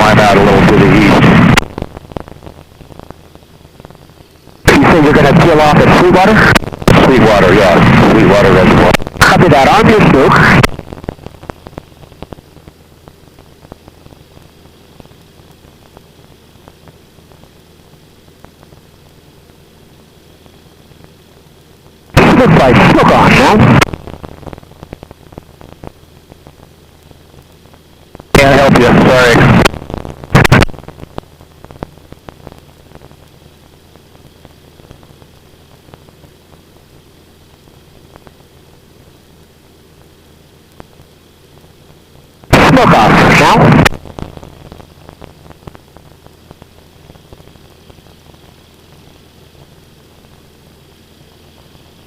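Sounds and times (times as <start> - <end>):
radio squelch burst: 0.0 - 2.4, 4.5 - 12.4, 22.2 - 26.0, 28.3 - 31.1, 42.5 - 45.8
radio static hiss: 0.0 - 52.0
steady low hum: 0.0 - 52.0
crackling clicks: 0.6 - 52.0.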